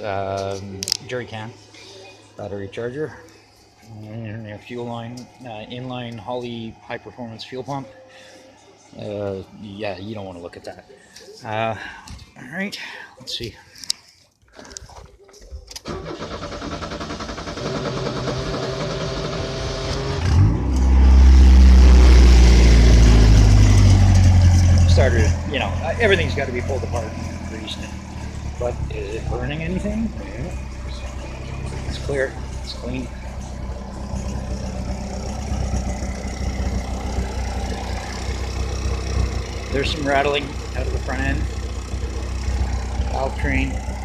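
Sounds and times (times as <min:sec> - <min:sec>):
car engine running: 0:00.0 - 0:12.3, 0:15.8 - 0:44.0
starter motor cranking: 0:15.8 - 0:20.5.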